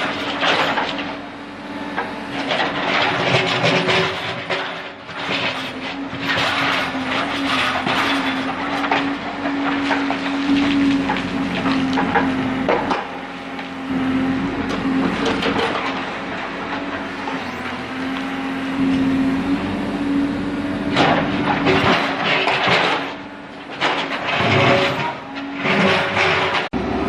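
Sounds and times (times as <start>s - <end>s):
diesel engine under load: 0.0s - 27.0s
clanks and scraping on stones: 2.4s - 13.1s, 21.0s - 26.7s.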